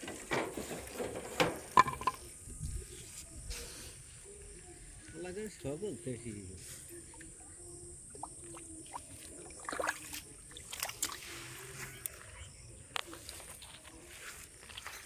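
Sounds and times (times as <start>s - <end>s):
small knocks: 0.0s - 2.2s
light water splashes: 8.1s - 11.8s.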